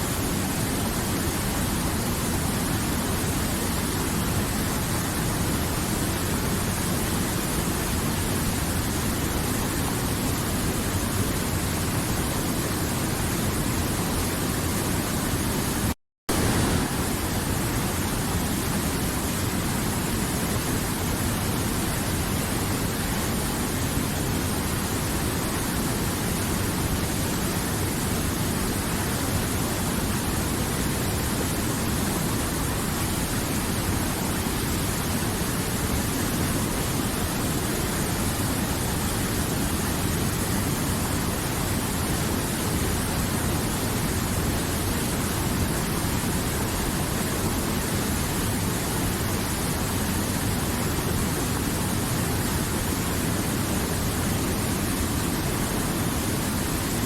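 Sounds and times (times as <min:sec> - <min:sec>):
river water flowing: 0:16.3 - 0:57.0.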